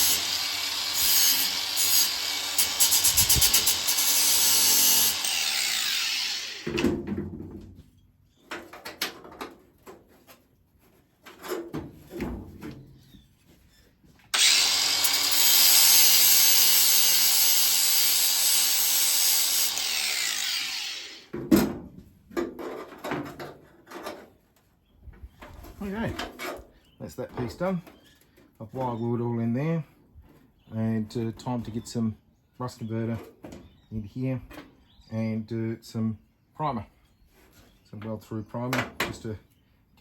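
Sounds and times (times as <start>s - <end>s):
rotary power tool on sheet steel: 0.0s - 6.8s, 14.3s - 21.3s.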